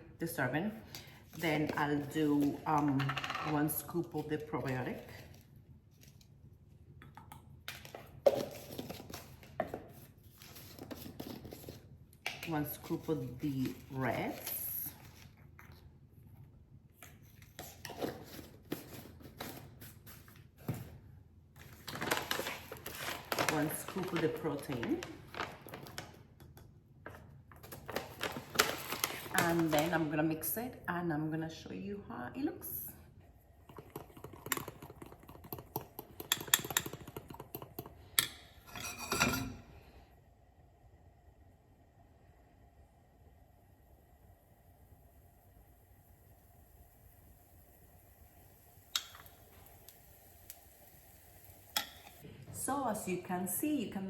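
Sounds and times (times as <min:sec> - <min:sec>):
scraping stir in bowl: 0:38.7 - 0:39.6.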